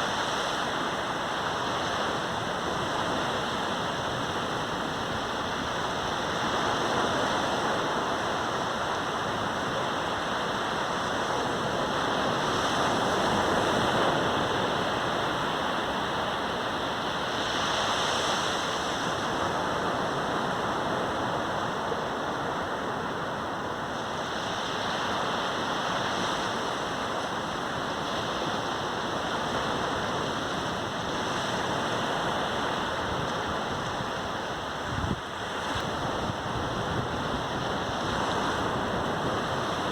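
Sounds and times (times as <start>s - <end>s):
surf breaking on beach: 24.0s - 39.9s.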